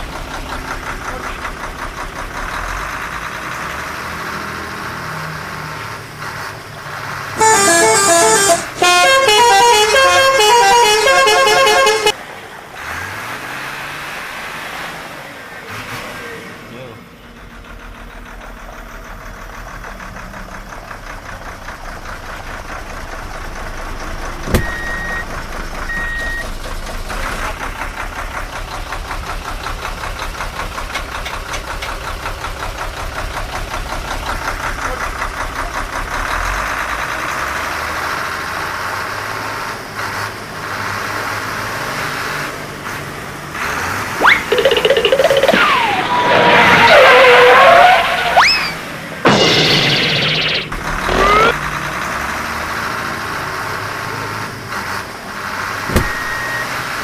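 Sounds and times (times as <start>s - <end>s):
toy truck engine pulsing: 7.2s - 12.2s, 44.0s - 51.7s
short high beeps: 44.2s - 45.9s, 48.4s - 51.6s.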